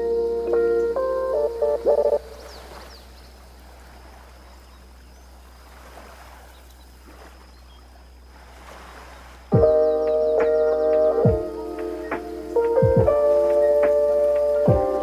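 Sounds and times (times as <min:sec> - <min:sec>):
sea waves on a beach: 0:00.0 - 0:15.0
chiming music: 0:09.6 - 0:15.0.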